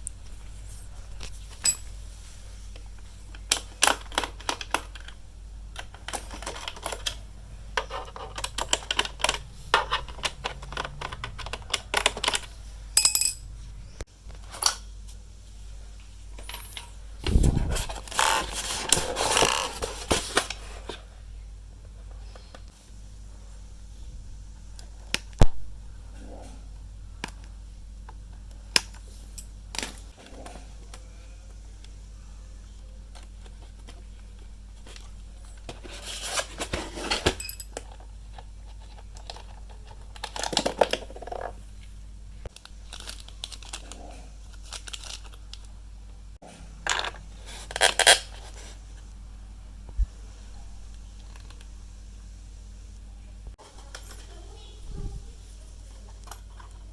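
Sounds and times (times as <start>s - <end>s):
steady low hum: 0.0s - 36.0s
handling clicks and knocks: 7.8s - 13.4s
rustling and scraping: 16.4s - 21.1s, 34.7s - 41.6s, 46.4s - 49.1s.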